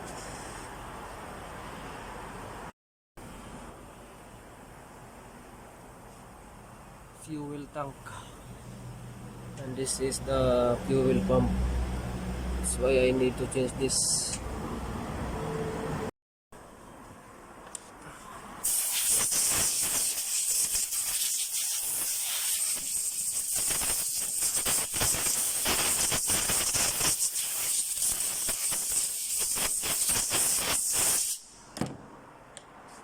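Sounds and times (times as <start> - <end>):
loud steady hiss: 18.6 - 31.7.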